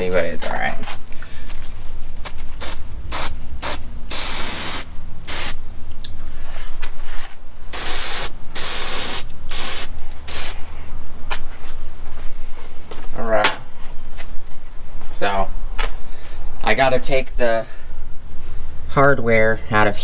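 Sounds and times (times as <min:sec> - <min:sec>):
spray can hissing bursts: 0:02.2 - 0:05.6, 0:07.7 - 0:10.6.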